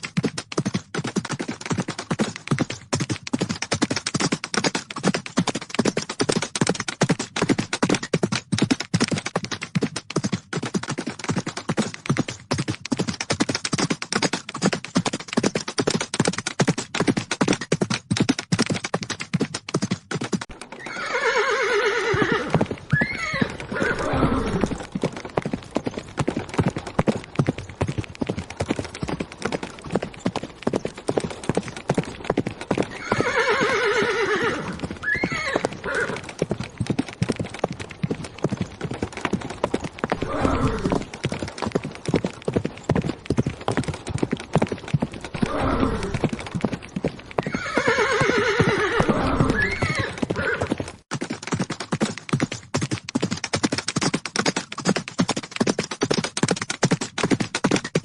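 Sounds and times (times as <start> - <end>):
horses galloping: 0.0 - 58.0
horse whinnying: 20.7 - 24.8, 32.9 - 36.3, 40.1 - 41.1, 45.4 - 46.2, 47.4 - 50.8.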